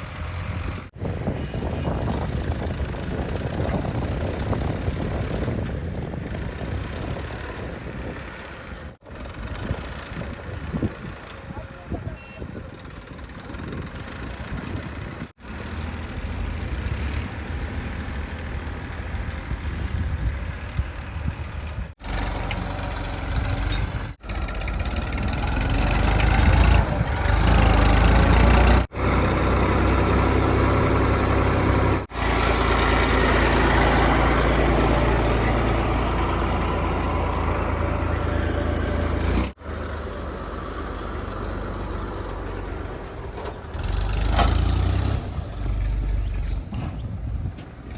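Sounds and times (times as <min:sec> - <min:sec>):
backhoe diesel engine digging: 0:12.2 - 0:47.9.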